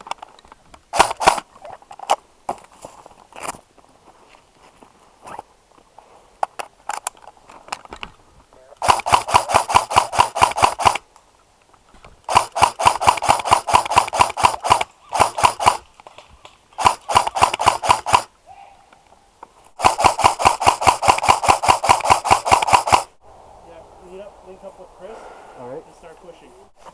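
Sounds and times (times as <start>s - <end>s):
airsoft rifle bursts: 0.9s - 1.5s, 8.8s - 11.0s, 12.3s - 15.9s, 16.8s - 18.3s, 19.8s - 23.1s.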